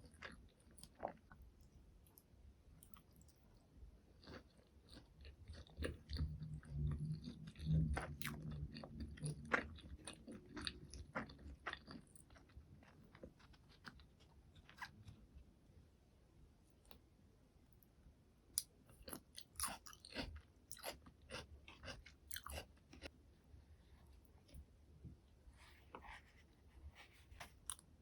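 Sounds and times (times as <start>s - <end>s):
crunchy chewing: 0.0s - 1.4s, 2.8s - 15.2s, 18.6s - 23.2s.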